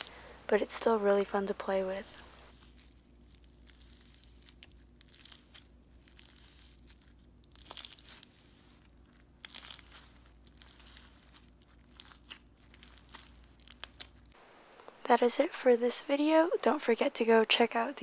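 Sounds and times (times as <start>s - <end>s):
slime crackling and popping: 2.5s - 14.8s.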